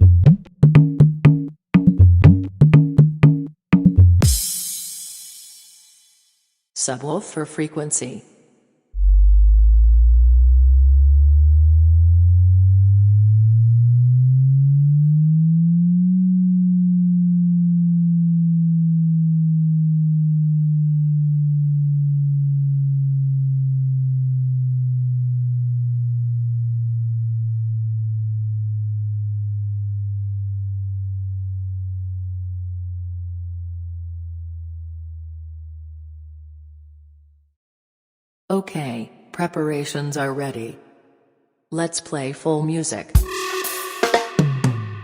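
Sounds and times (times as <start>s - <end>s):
sine tone sweep: 9.0s - 36.6s, 43.2s - 45.0s.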